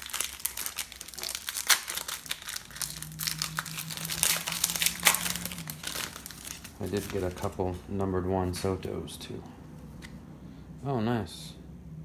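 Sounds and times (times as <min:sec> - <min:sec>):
card pack wrappers crinkling: 0:00.0 - 0:08.8.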